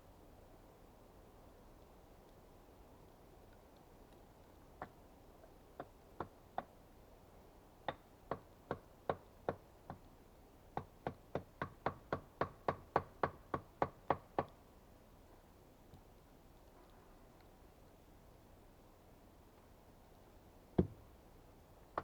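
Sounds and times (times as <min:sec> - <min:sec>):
tool knocking on wood: 0:20.8 - 0:21.0.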